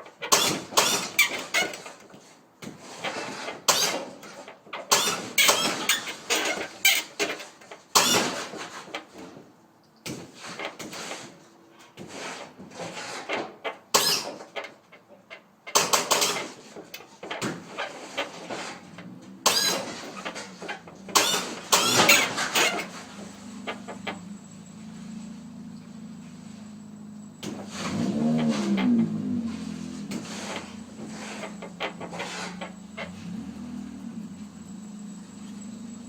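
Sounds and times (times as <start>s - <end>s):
hydraulic pump and valve noise: 0.2s - 2.0s, 2.6s - 9.0s, 15.7s - 36.0s.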